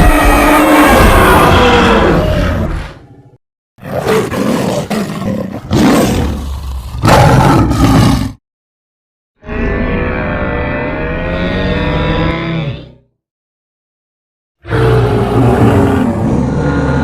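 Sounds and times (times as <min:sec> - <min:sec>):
creature roar: 0:00.0 - 0:03.0, 0:03.8 - 0:08.4, 0:09.4 - 0:13.0, 0:14.6 - 0:17.0.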